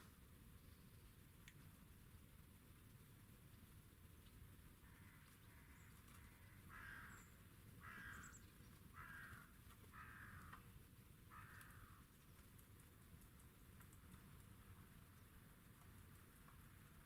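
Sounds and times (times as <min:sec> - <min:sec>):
faint crow cawing: 0:04.8 - 0:12.2.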